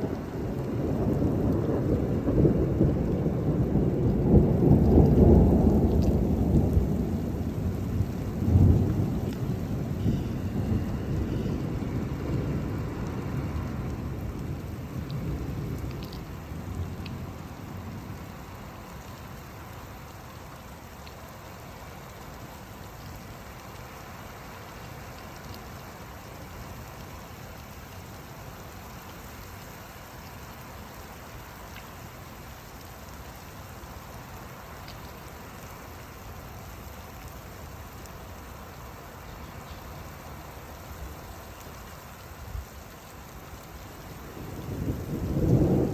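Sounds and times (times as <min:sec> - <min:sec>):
thunder rumble: 0:00.0 - 0:18.6, 0:43.6 - 0:45.9
steady rain falling: 0:00.0 - 0:45.9.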